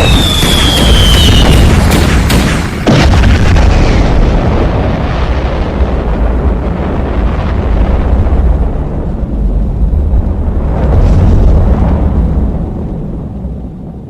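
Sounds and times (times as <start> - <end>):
sharp firework bang: 0.0 - 5.0
fireworks exploding: 0.0 - 9.5
low rumble of booms: 0.0 - 14.0.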